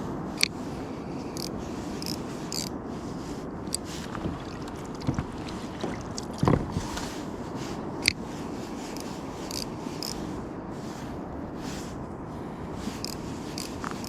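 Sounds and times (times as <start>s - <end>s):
wind: 0.0s - 14.0s
water washing: 3.3s - 7.8s
hollow knock: 5.0s - 6.8s.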